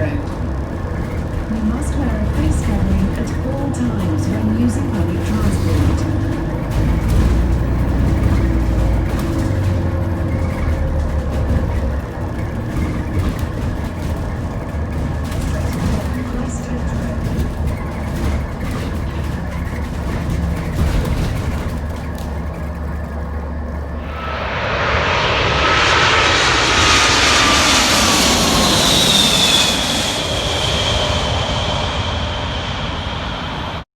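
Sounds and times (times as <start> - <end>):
bus low rumble: 0.0 - 33.9.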